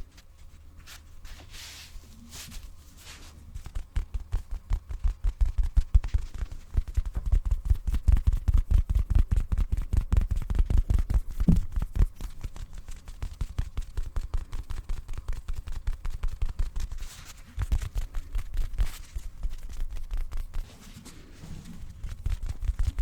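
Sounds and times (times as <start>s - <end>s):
tapping on a pillow: 3.7s - 12.3s.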